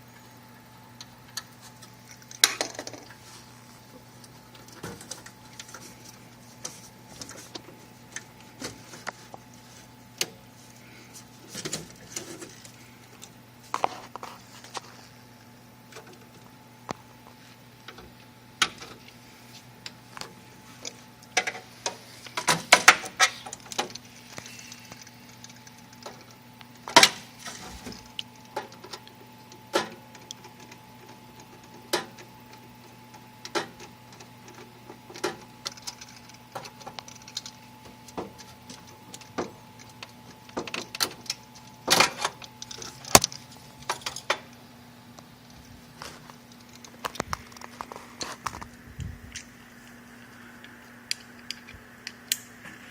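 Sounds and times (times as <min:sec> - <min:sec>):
low electrical hum: 0:00.0 - 0:52.9
small parts and tools clattering: 0:01.3 - 0:03.4, 0:10.2 - 0:15.1, 0:33.0 - 0:44.6, 0:50.2 - 0:52.5.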